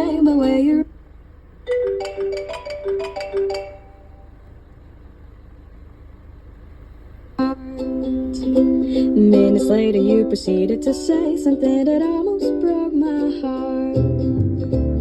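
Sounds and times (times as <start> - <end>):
low hum: 0.0 - 15.0
marimba phone ringtone: 1.7 - 4.4
song on car stereo: 1.7 - 4.4, 7.4 - 15.0.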